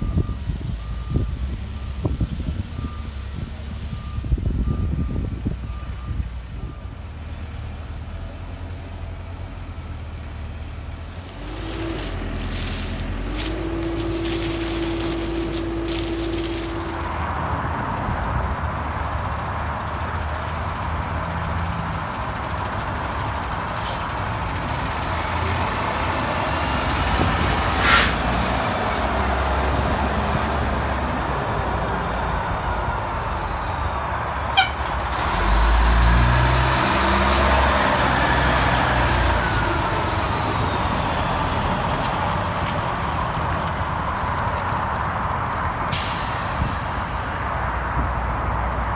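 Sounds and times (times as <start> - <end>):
diesel engine running: 0.0 - 48.9
sharp air hiss: 27.8 - 28.3, 45.9 - 47.6.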